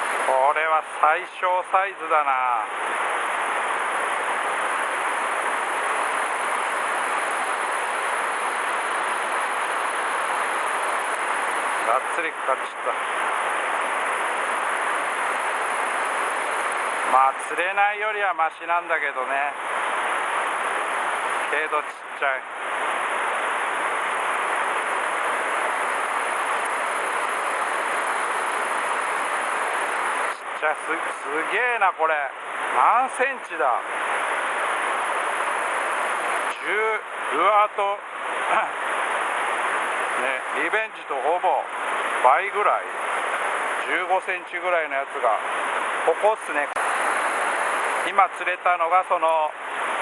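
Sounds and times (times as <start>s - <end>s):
river current rushing: 45.4s - 48.1s.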